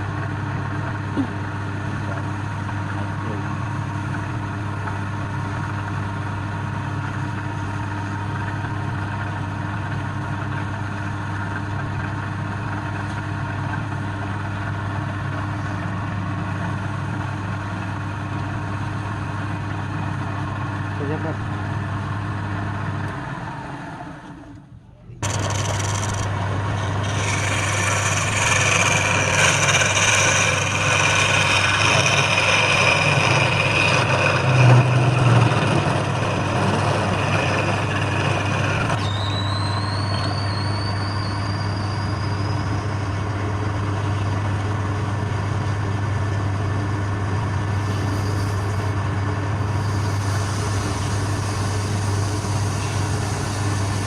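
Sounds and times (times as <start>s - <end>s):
wood lathe motor hum: 25.2s - 39.3s, 43.0s - 54.0s
harsh hiss: 49.7s - 54.0s.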